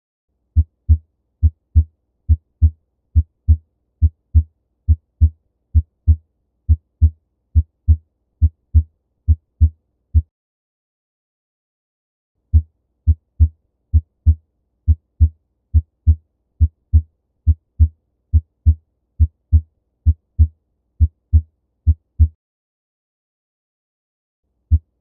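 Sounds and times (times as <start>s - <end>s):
heartbeat through stethoscope: 0.6s - 10.3s, 12.5s - 22.4s, 24.7s - 25.0s.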